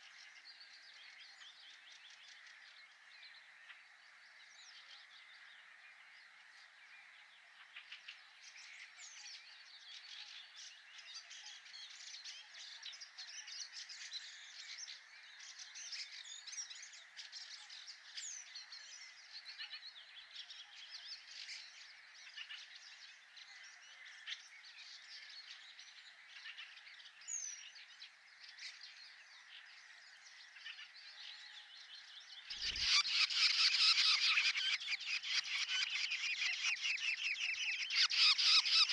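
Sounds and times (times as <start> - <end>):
birds chirping: 20.1 - 38.9
frogs calling in chorus: 32.4 - 38.9.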